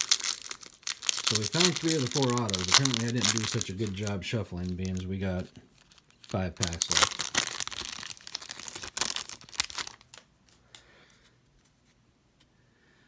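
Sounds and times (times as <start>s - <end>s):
foil wrapper tearing and crinkling: 0.0s - 5.1s, 5.7s - 10.6s.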